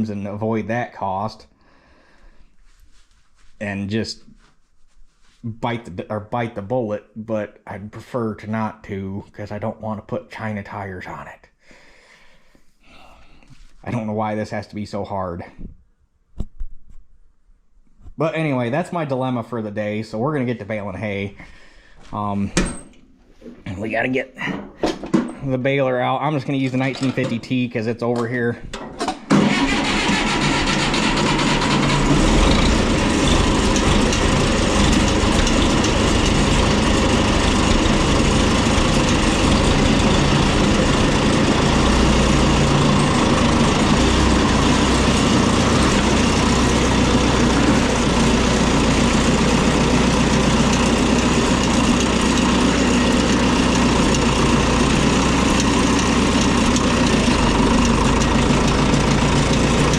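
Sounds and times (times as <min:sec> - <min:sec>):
tractor diesel engine running: 0:29.3 - 0:59.9.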